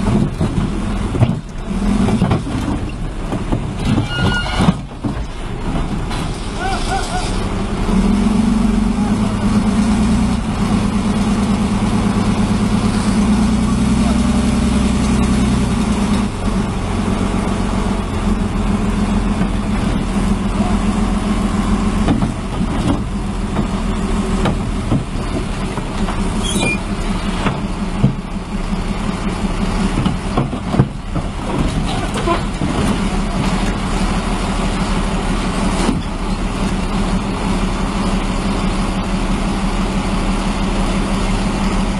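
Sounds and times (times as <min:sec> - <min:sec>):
knocks and clanks: 0:00.0 - 0:06.5, 0:21.9 - 0:28.4, 0:29.8 - 0:33.9
diesel engine running: 0:00.0 - 0:41.9.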